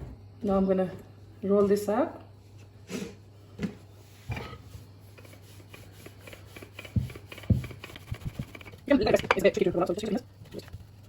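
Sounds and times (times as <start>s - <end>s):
rolling pin rolling dough: 4.1s - 11.0s.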